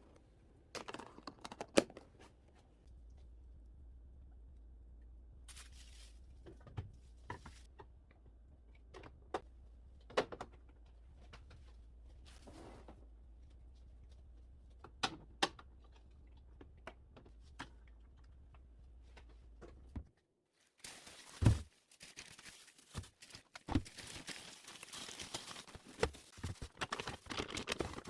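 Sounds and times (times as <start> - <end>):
plastic crinkling and rustling: 5.5 - 6.2, 20.6 - 28.0.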